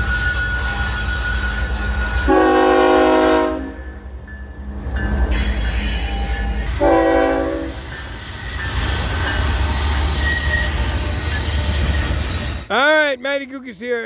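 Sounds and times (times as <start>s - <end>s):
train rumble and rail noise: 0.0s - 14.0s
train horn blast: 2.2s - 3.9s, 6.8s - 7.8s.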